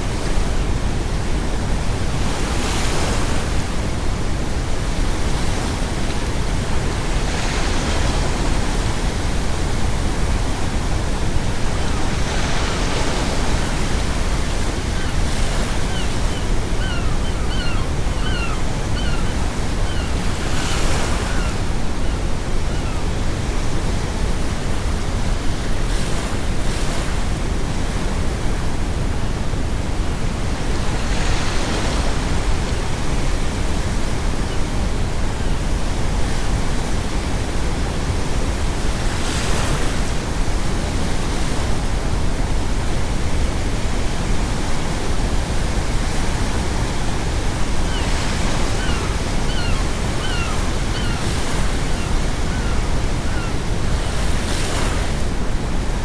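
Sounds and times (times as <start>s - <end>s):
ocean waves breaking: 6.8s - 24.2s, 45.2s - 56.0s
seagull calls: 14.9s - 23.1s, 47.8s - 53.7s.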